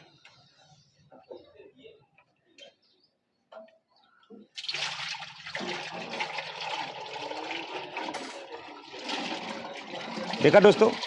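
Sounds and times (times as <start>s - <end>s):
oil pouring: 4.6s - 11.0s.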